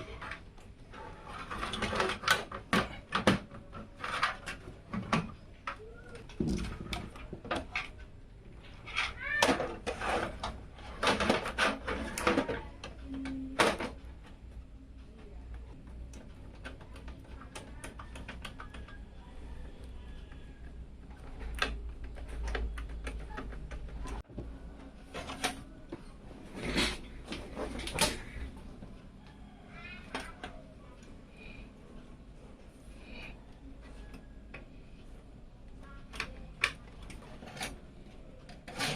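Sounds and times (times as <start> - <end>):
loud clattering handling noises: 0.0 - 14.4, 21.1 - 29.0
computer parts clicking and tapping: 11.0 - 24.3.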